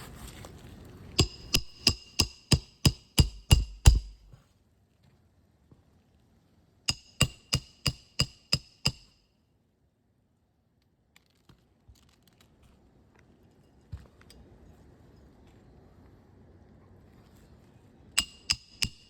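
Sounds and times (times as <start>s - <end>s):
hammer striking metal: 1.2s - 4.4s, 6.9s - 9.2s, 18.2s - 19.0s.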